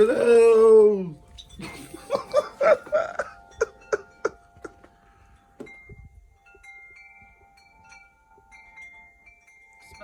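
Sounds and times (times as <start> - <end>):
chimes ringing: 1.3 - 10.0.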